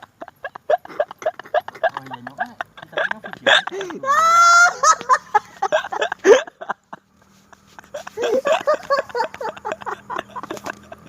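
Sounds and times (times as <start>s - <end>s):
comedy laughter: 0.0s - 11.0s.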